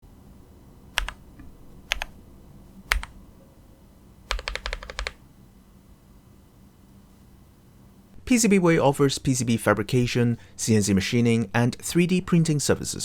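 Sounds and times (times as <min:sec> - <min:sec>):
mechanical keyboard keystrokes: 0:01.0 - 0:02.2, 0:02.9 - 0:03.2, 0:04.3 - 0:05.2.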